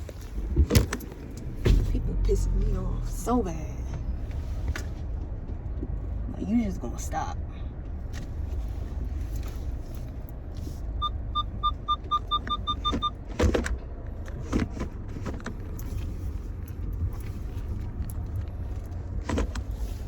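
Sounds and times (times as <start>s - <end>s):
car cabin rumble: 0.0s - 20.0s
electronic warning beeps: 11.0s - 13.2s.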